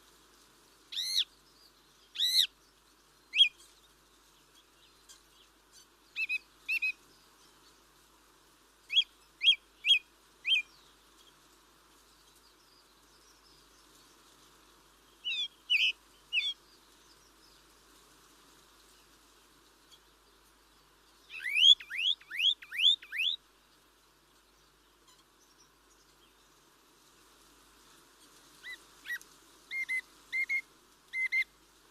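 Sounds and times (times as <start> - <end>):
faint background hiss: 0.0 - 31.9
bird chirps: 3.3 - 3.9, 15.2 - 17.2, 21.2 - 23.4, 31.2 - 31.5.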